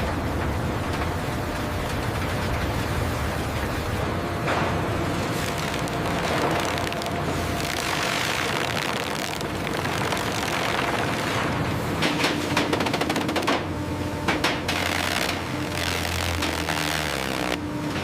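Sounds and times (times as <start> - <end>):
sawmill machinery running: 0.0 - 18.0.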